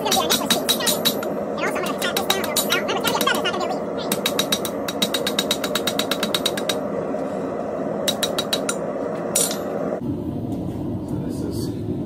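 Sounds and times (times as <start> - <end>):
hammer striking metal: 0.0 - 1.4, 2.0 - 3.5, 4.1 - 6.9, 8.0 - 9.8
steady rushing noise: 0.0 - 12.0.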